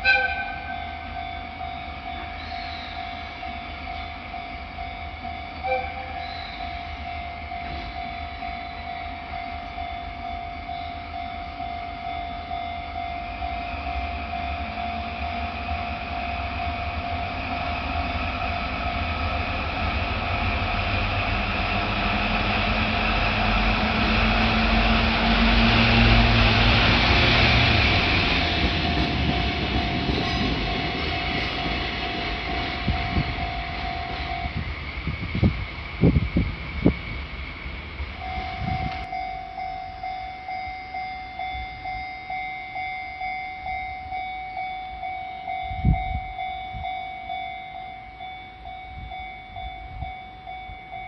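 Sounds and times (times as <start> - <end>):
train rumble and rail noise: 0.0 - 51.0
level crossing bell ringing: 0.7 - 17.6, 38.2 - 51.0
brief loud tone: 4.9 - 11.6, 38.2 - 42.3.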